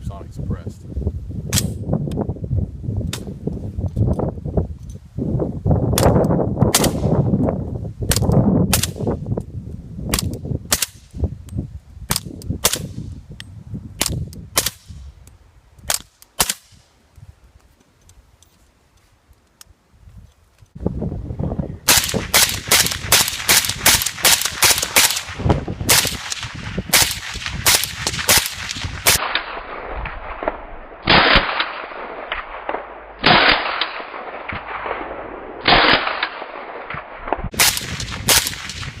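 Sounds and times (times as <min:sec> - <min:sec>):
suppressed rifle gunshots: 0:06.0 - 0:07.2, 0:15.9 - 0:16.8, 0:21.9 - 0:39.0.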